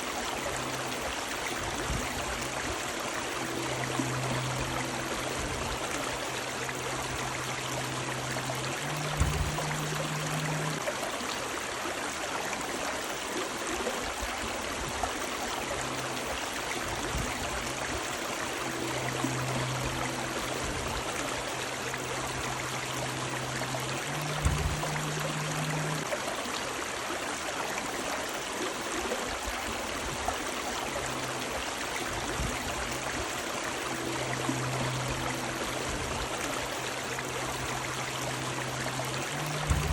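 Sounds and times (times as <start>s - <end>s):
low hum: 0.0s - 10.9s, 15.5s - 26.2s, 30.8s - 39.9s
river water rushing: 0.0s - 39.9s
short thump: 9.0s - 9.9s, 24.4s - 25.0s.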